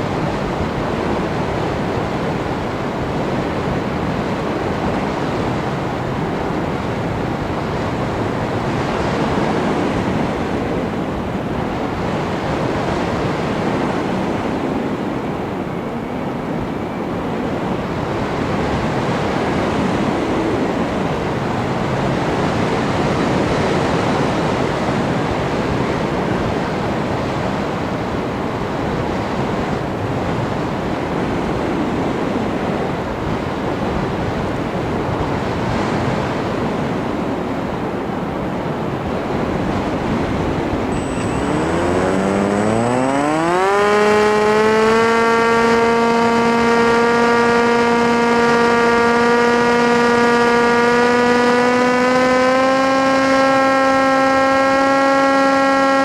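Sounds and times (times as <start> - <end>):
steady rushing noise: 0.0 - 56.0
electric motor whine: 40.9 - 56.0.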